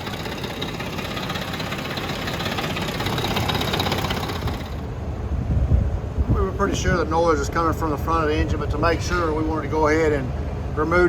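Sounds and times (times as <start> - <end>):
engine running with rattle: 0.0 - 5.2.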